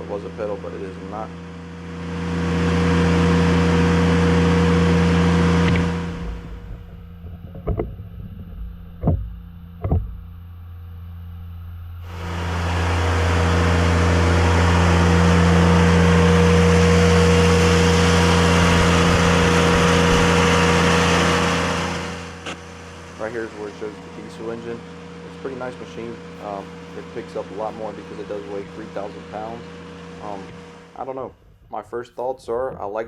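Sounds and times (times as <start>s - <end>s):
diesel excavator engine running: 0.0s - 31.6s
sharp knocks: 5.6s - 10.3s.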